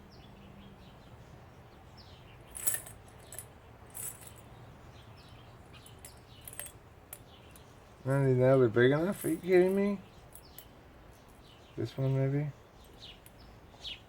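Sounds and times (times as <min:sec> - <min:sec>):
light metallic clinks: 0:02.5 - 0:04.6, 0:05.7 - 0:07.7, 0:09.0 - 0:12.2.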